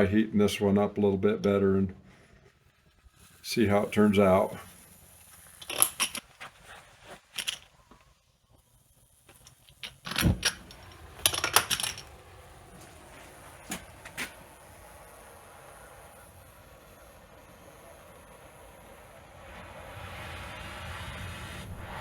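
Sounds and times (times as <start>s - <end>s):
torch burning hiss: 2.2s - 7.3s, 7.9s - 22.0s
metal tools clinking: 5.5s - 6.3s, 7.3s - 7.8s, 9.4s - 12.1s.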